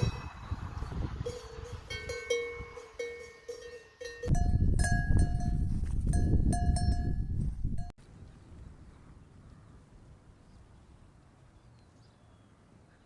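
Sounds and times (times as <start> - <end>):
loud bell ringing: 0.0 - 7.3
cowbells clanking: 0.0 - 7.9.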